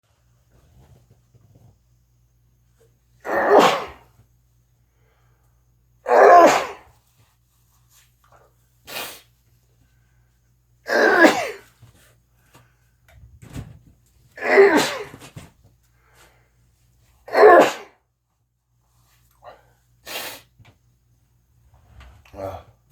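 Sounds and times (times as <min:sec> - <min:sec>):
person sneezing loudly: 0:03.2 - 0:04.1, 0:06.1 - 0:06.9, 0:10.9 - 0:11.7, 0:14.4 - 0:15.3, 0:17.3 - 0:18.0.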